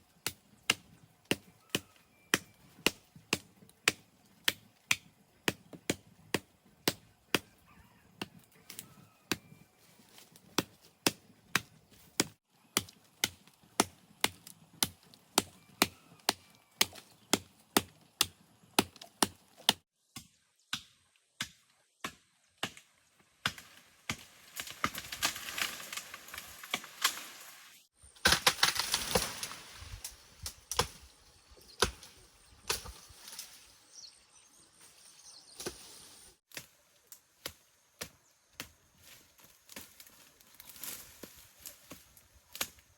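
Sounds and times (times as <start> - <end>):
blade chopping vegetation: 10.6 - 27.4, 28.2 - 31.1, 31.7 - 33.6.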